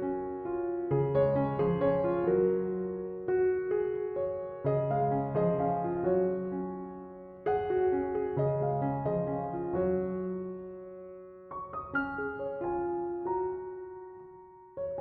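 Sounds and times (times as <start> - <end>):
soft piano music: 0.0 - 15.0.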